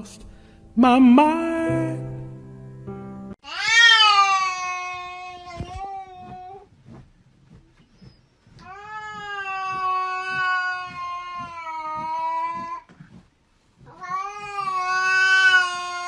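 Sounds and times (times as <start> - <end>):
cat yowling: 3.4 - 6.6, 8.8 - 12.7, 13.9 - 16.0.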